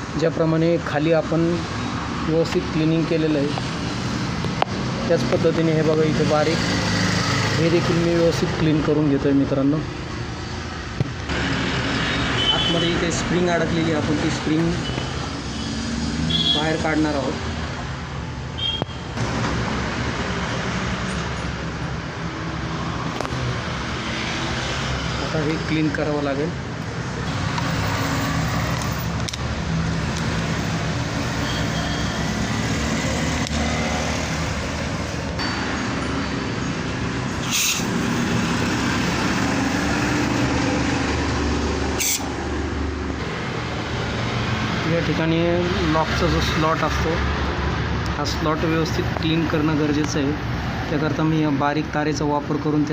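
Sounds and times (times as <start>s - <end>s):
short sharp hisses: 37.4s - 38.0s, 42.0s - 42.4s.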